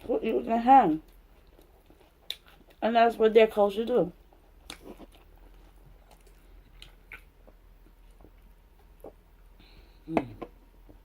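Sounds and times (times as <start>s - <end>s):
person chewing food: 1.0s - 2.8s, 4.2s - 11.0s.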